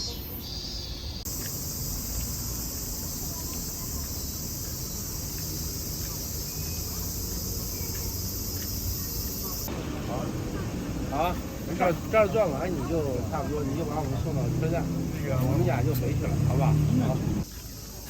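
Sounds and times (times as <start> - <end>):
insects calling shrilly: 0.0 - 9.7.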